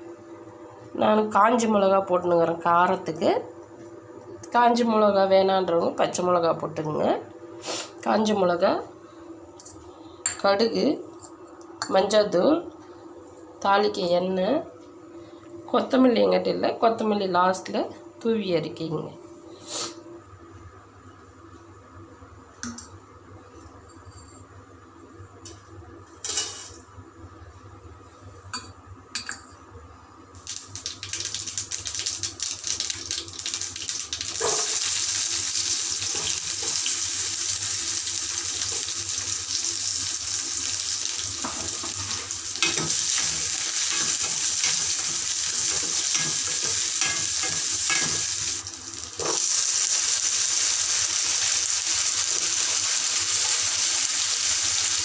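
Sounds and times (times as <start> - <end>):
food sizzling in oil: 30.4 - 55.0.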